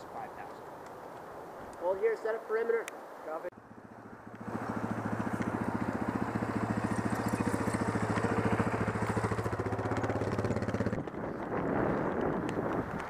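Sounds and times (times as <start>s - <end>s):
quad engine idling: 3.6s - 11.0s.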